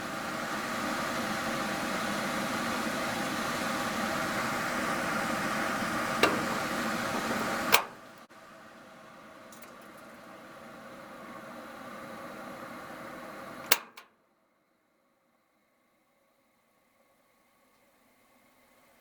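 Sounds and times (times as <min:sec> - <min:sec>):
range hood fan running: 0:00.0 - 0:14.2.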